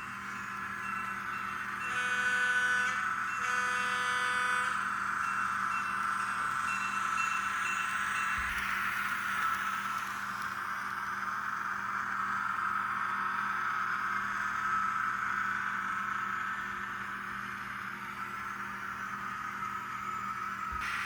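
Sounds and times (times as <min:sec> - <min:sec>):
tinny diesel railcar engine sound: 0:00.0 - 0:21.0.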